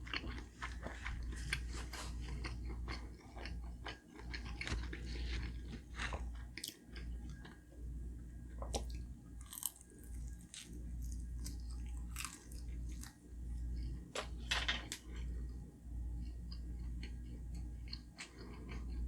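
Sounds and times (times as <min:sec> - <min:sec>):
wet chewing clicks: 0:08.6 - 0:13.1.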